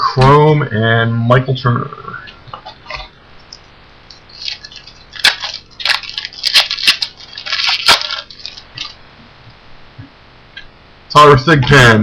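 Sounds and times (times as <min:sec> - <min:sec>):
foil wrapper crinkling and tearing: 0:04.1 - 0:09.0.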